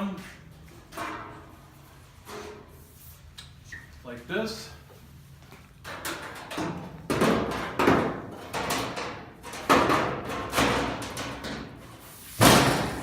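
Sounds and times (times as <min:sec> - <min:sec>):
metal hood knocks and clanks: 0:05.9 - 0:11.8.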